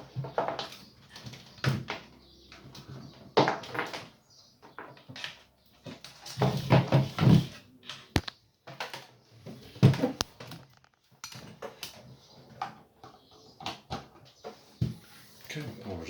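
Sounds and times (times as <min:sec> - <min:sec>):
sharp clicks: 0:08.1 - 0:08.4.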